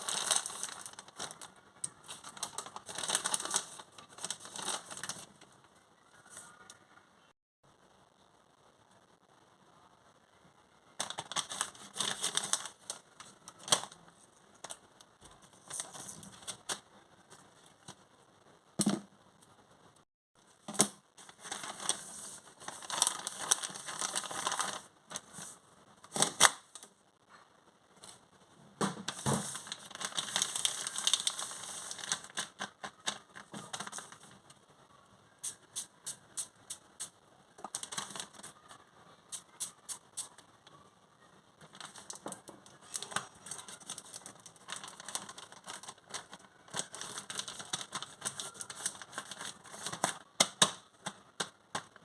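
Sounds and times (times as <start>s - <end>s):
packaging crinkling and rustling: 0.0s - 5.6s, 11.0s - 18.0s, 20.6s - 27.0s, 28.9s - 34.6s, 37.6s - 38.6s, 41.6s - 52.0s.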